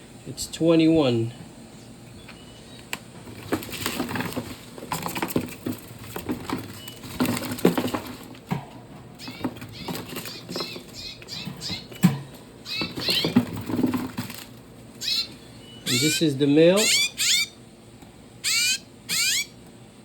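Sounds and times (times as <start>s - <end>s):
birds fluttering in a cage: 0.6s - 17.6s, 18.4s - 19.6s
knocks and rustling: 3.1s - 14.7s.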